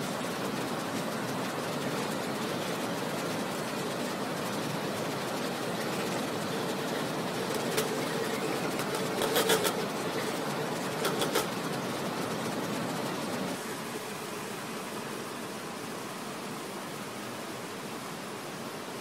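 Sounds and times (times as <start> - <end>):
constant hiss: 0.0 - 19.0
toy vehicle motor whine: 7.4 - 10.3.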